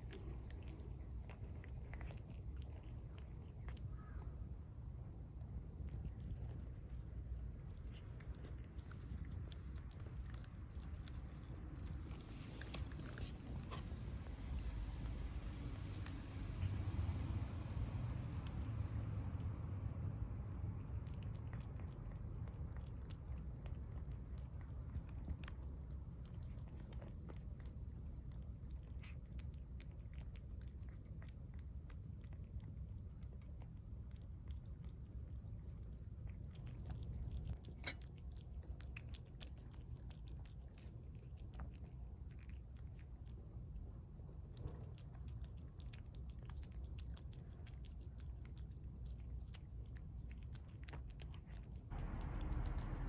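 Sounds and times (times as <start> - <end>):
cat chewing clicks: 0.0 - 4.3, 5.7 - 43.5, 44.5 - 53.0
steady low rumble: 0.0 - 53.0.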